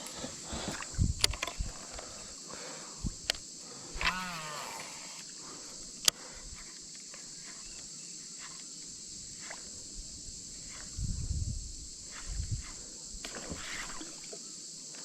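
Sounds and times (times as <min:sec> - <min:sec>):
high insect drone: 0:00.0 - 0:15.0
sharp click: 0:01.2 - 0:01.6.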